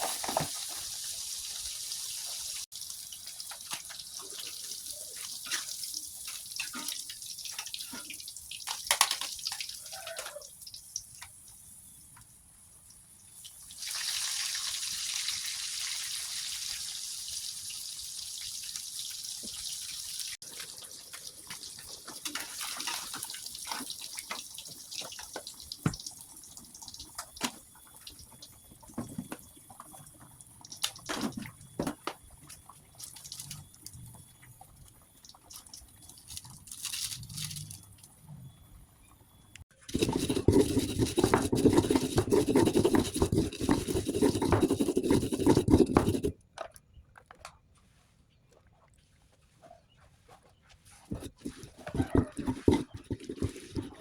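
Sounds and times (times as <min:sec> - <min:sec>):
water splashes and drips: 0:00.0 - 0:29.0, 0:29.8 - 0:34.0, 0:34.6 - 0:37.2.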